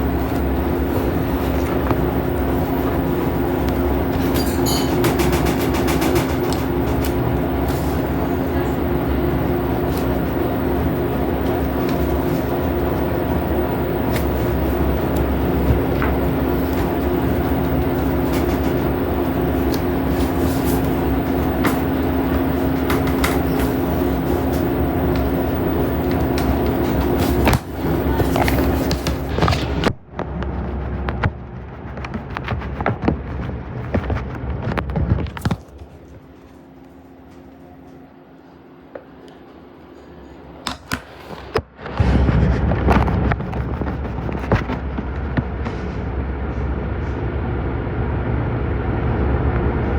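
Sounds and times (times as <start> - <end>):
washing machine humming: 0.0 - 49.9
washing machine knocking and rattling: 1.2 - 9.2.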